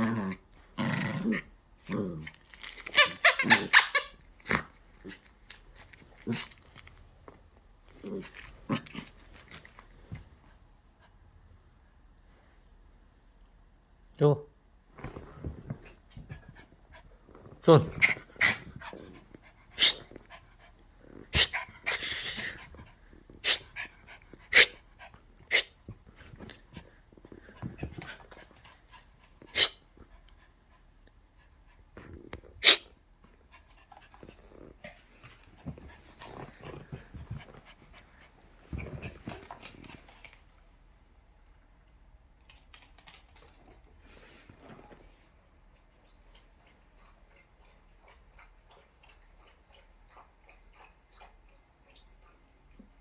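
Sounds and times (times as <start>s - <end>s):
dog panting: 43.4s - 53.0s.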